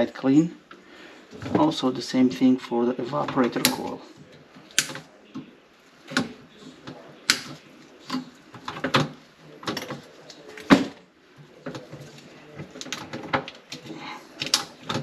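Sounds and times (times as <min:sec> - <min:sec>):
hands clicking and knocking on tubing: 0:06.1 - 0:15.0.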